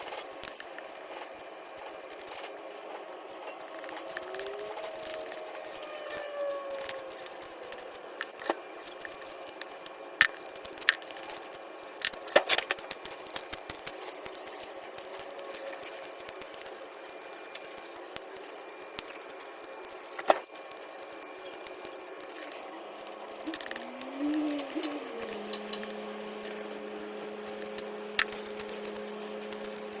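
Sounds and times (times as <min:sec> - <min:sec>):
machine humming: 0:00.0 - 0:30.0.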